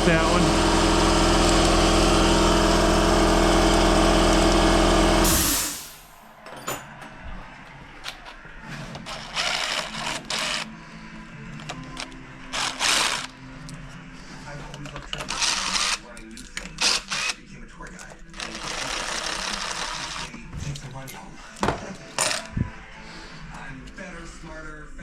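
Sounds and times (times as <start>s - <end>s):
motor hum: 0.0s - 6.1s
parts and tools clicking and clinking: 6.4s - 7.2s, 14.6s - 22.6s.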